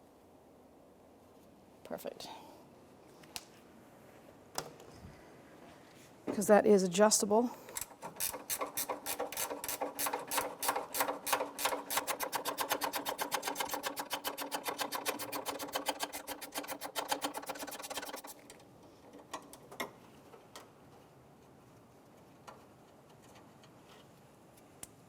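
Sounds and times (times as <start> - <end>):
ratchet clicking: 7.8 - 18.4.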